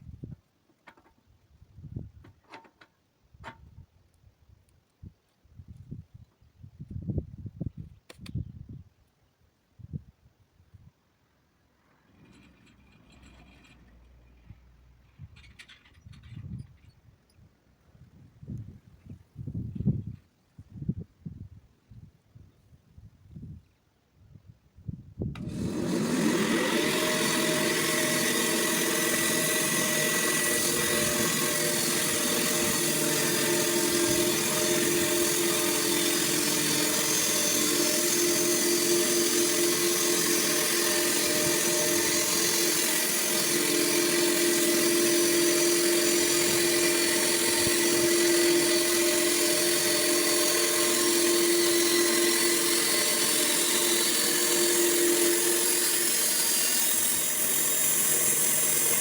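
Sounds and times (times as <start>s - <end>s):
sawmill whining: 25.3s - 59.0s.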